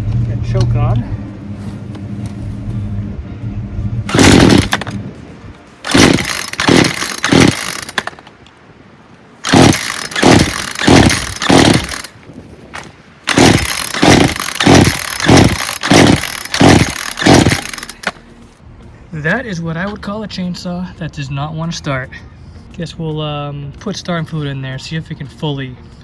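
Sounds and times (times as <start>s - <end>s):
engine cranking: 4.0s - 5.1s, 5.8s - 8.4s, 9.4s - 12.2s, 12.8s - 18.2s
chainsaw starter cord pulls: 4.1s - 5.0s, 5.8s - 8.3s, 9.4s - 12.2s, 12.8s - 18.2s.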